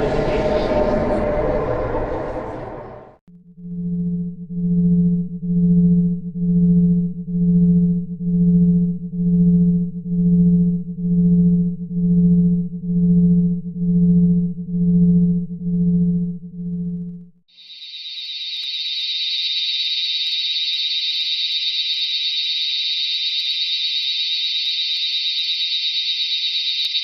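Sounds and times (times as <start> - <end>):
low electronic hum pulsing: 0.0 - 17.2.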